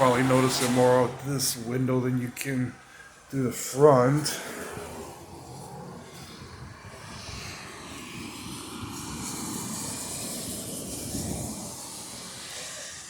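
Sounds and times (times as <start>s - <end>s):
engine and road rumble: 0.0s - 13.0s
tyre hiss on wet road: 4.4s - 13.0s.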